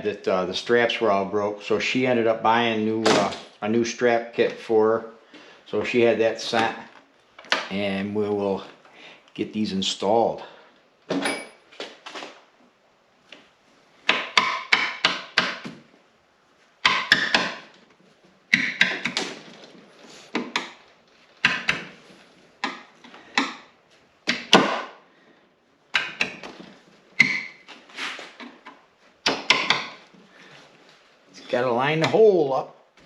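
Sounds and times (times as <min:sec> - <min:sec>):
clicks knocks and rattles of tools: 0:25.9 - 0:30.2.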